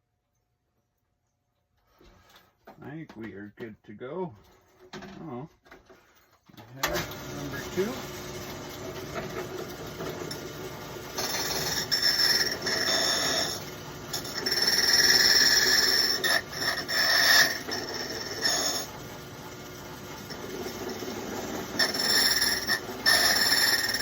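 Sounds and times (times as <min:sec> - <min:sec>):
machine motor running: 0:06.8 - 0:24.0
cutter wheel screeching on metal: 0:07.0 - 0:19.3, 0:20.0 - 0:24.0.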